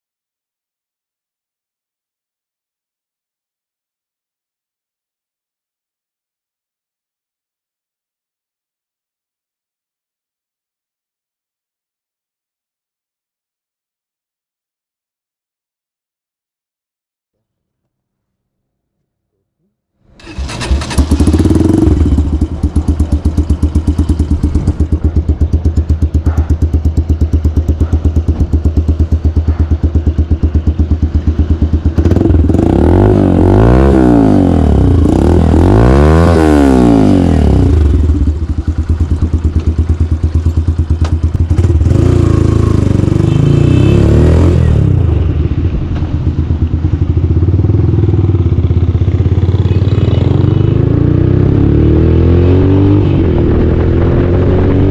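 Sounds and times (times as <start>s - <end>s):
motorcycle engine idling and revving: 20.2s - 54.9s.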